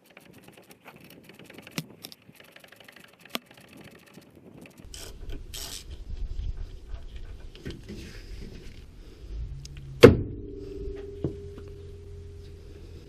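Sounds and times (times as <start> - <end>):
low rumble: 6.0 - 13.0.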